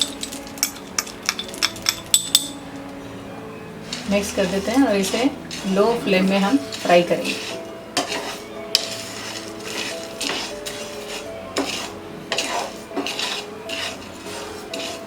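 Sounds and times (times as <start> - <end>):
utensil scraping spices in pan: 0.0 - 2.6, 3.8 - 15.0
utensil clinking against pan: 3.9 - 15.0.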